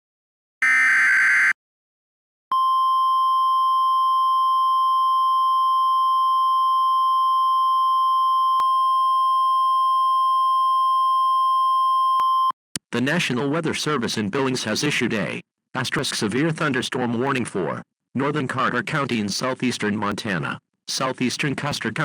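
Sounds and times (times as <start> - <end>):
single-pitch warning alarm tone: 0.6 - 1.6.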